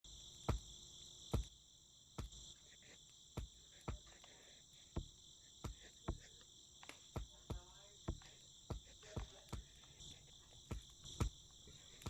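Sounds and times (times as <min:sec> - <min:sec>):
insect chorus chirring: 0:00.0 - 0:12.0.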